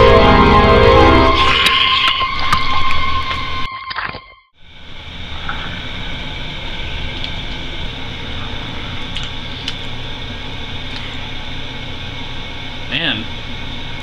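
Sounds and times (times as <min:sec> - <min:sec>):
room tone hiss and hum: 0:04.6 - 0:14.0.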